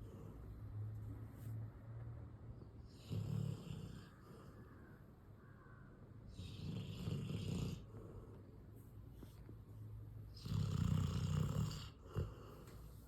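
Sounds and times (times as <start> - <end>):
dog snoring: 2.9 - 4.2, 6.3 - 8.2, 10.3 - 12.7
dog breathing: 10.5 - 13.0.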